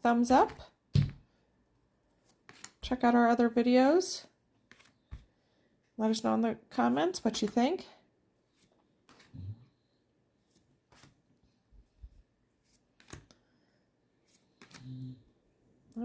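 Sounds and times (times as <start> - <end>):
trading cards clicking and rustling: 13.0 - 13.4.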